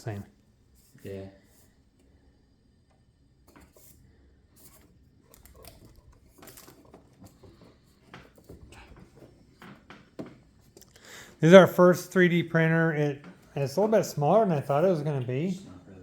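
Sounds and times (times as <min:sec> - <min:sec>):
packaging rustling and scraping: 0:04.6 - 0:09.6.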